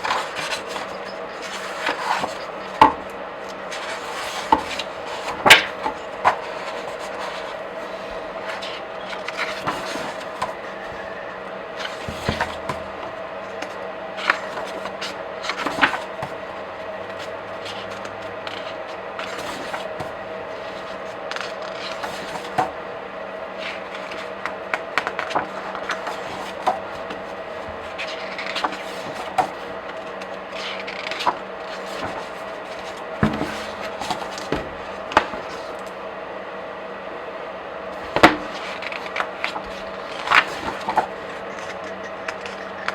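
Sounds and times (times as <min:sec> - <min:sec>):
steady background hum: 0:00.0 - 0:42.9
paper pages flipping: 0:17.1 - 0:22.7, 0:23.6 - 0:35.9, 0:38.0 - 0:42.9.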